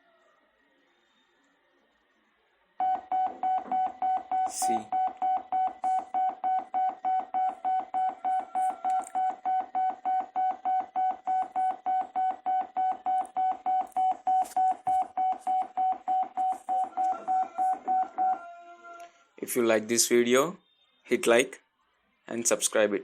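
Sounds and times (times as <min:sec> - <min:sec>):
short morse code beeps: 0:02.8 - 0:18.4.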